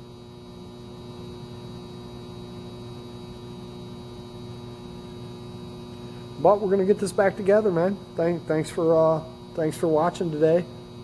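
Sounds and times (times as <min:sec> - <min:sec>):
electrical mains hum: 0:00.0 - 0:11.0.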